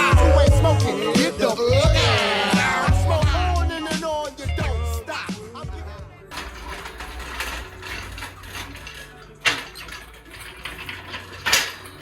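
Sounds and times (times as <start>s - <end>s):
sharp metallic clanks: 6.3s - 12.0s
tools clicking and knocking: 6.3s - 12.0s.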